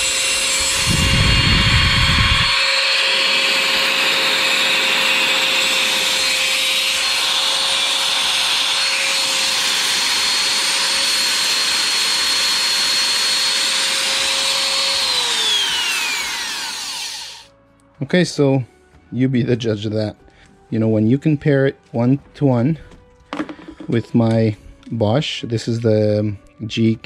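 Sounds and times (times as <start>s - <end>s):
router motor whine: 0.0s - 17.5s.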